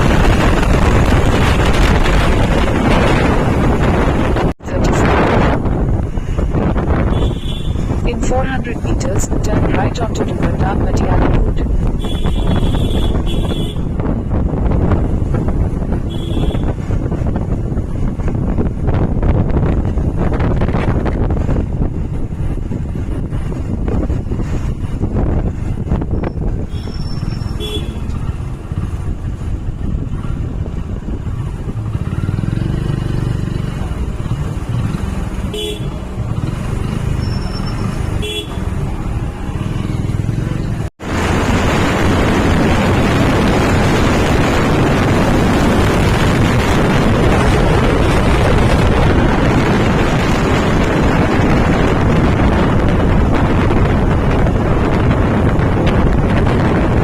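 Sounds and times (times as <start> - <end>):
motorbike engine and road rumble: 0.0 - 57.0
wind buffeting microphone: 0.0 - 57.0
horn toots: 7.0 - 8.0, 12.0 - 13.9, 16.0 - 16.8, 26.7 - 28.2, 35.5 - 36.1, 37.2 - 38.8.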